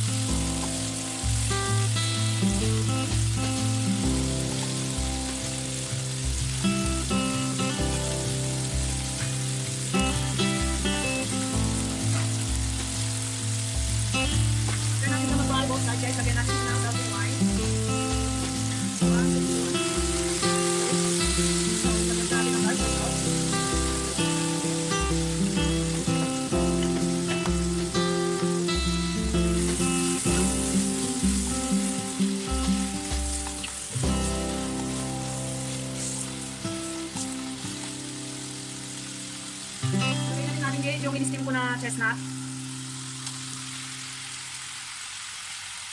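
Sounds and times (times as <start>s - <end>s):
background music with bass: 0.0s - 43.2s
chicken sizzling in oil: 0.0s - 45.9s.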